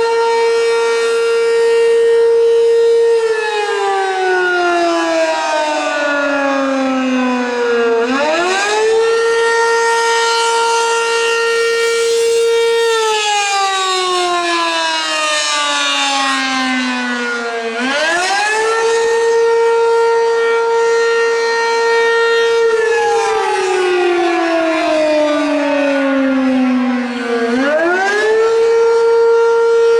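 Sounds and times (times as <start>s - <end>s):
fire siren wailing: 0.0s - 29.9s.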